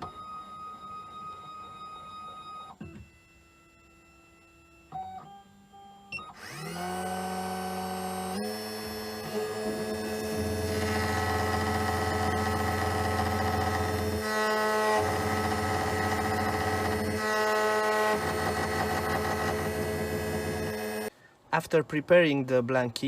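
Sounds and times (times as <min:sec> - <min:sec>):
key cutting machine motor hum: 0:06.2 - 0:21.1.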